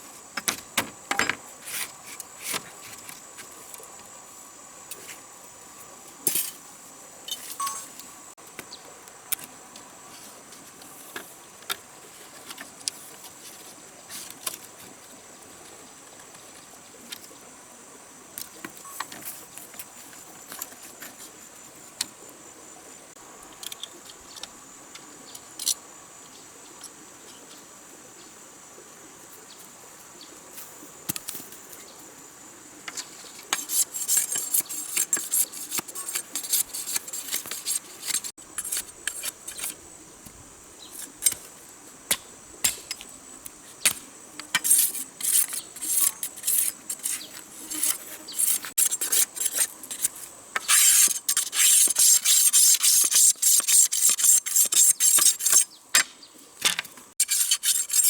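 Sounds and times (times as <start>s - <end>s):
rapid rasping scrapes: 33.5s - 39.8s, 44.4s - 55.7s, 57.2s - 58.0s.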